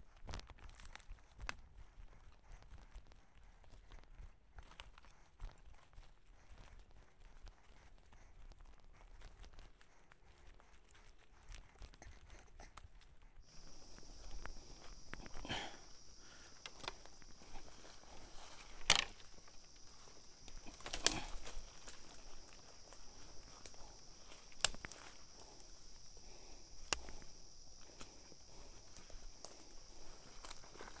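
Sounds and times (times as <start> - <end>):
footsteps on dirt trail: 13.4 - 31.0
high-pitched insect drone: 13.5 - 31.0.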